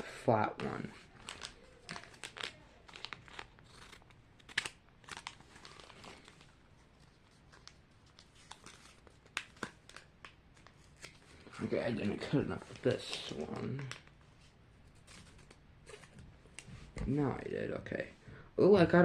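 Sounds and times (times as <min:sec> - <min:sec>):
packet crinkling and rustling: 0:00.6 - 0:14.2.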